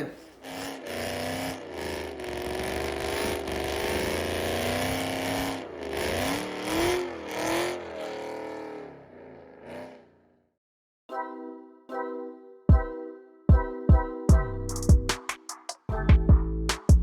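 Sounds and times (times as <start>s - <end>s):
car engine revving: 0.3s - 10.4s.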